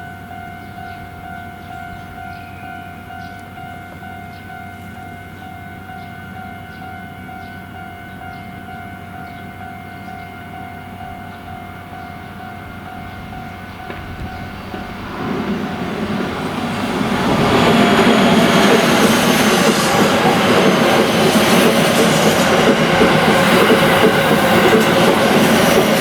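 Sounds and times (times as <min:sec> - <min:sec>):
level crossing warning bell: 0:00.0 - 0:14.6
train passing: 0:00.0 - 0:26.0.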